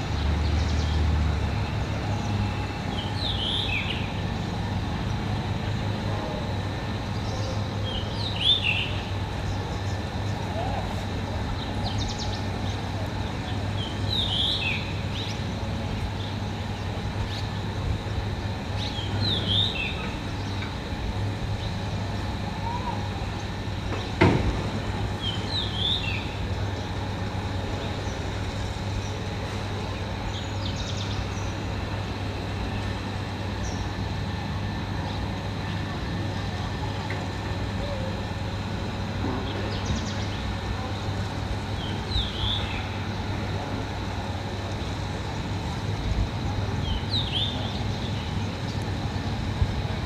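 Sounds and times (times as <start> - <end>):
heavy machine engine humming: 0.0 - 50.0.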